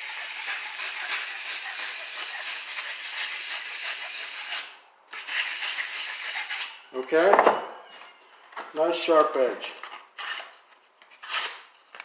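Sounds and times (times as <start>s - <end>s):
knife rasping on sandpaper: 0.0s - 6.8s.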